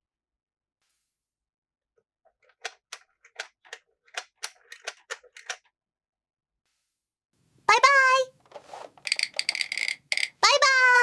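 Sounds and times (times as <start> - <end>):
plastic toy pieces clicking: 2.4 - 5.7, 9.0 - 10.4.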